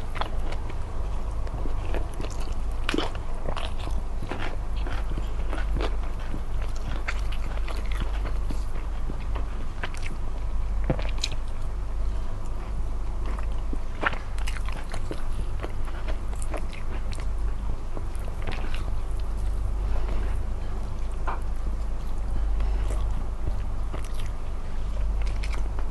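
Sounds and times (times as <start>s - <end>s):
chewing and biting food: 0.0s - 25.9s
steady low hum: 0.0s - 25.9s.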